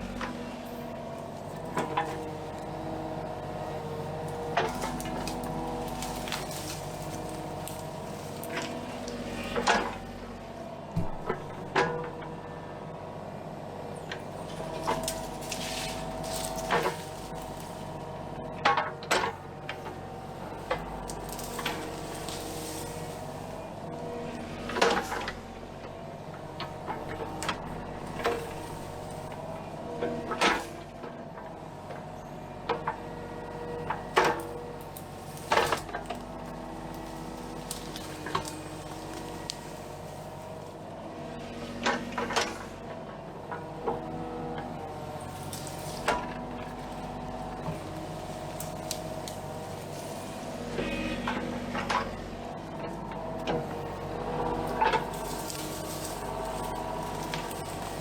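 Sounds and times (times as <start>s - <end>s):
excavator diesel engine running: 0.0s - 58.0s
brush snapping cracks: 4.1s - 9.9s, 14.4s - 18.1s, 20.5s - 23.6s, 27.1s - 29.4s, 33.9s - 40.7s, 45.2s - 50.8s, 54.4s - 58.0s.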